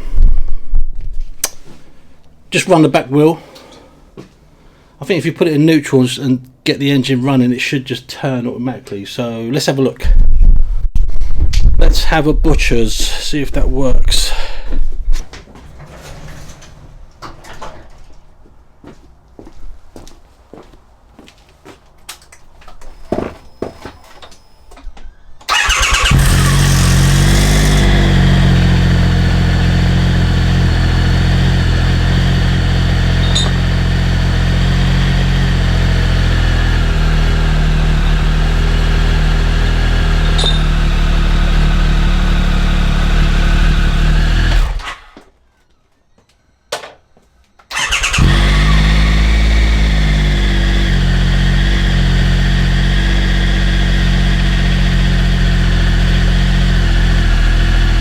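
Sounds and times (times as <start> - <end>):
motorcycle engine idling: 25.5 - 44.9, 47.8 - 58.0.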